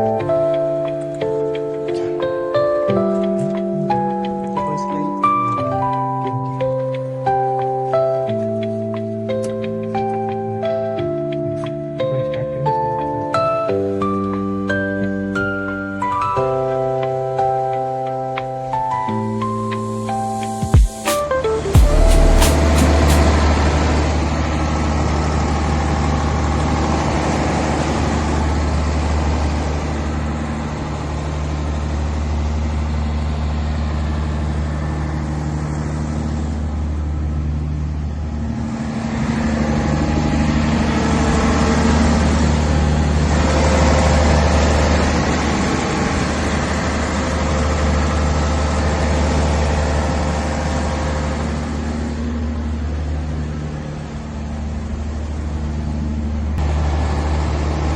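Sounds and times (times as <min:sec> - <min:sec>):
diesel generator engine running: 0:21.9 - 0:57.9.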